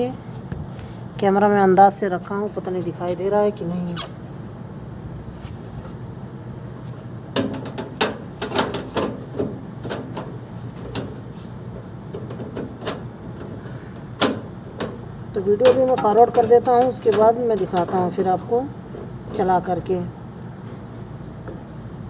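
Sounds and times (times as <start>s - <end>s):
steady low hum: 0.0s - 22.0s
clicks and knocks of fan cover: 7.3s - 11.2s, 12.1s - 15.0s.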